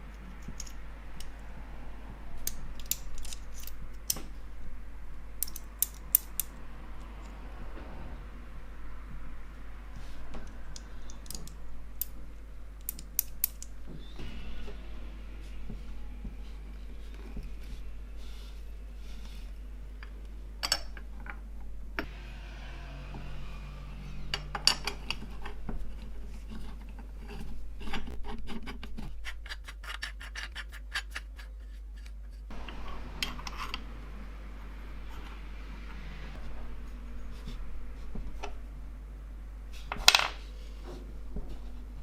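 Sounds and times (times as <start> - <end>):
low steady hum: 0.0 - 42.0
small metal parts clinking: 2.4 - 4.2, 5.4 - 6.5.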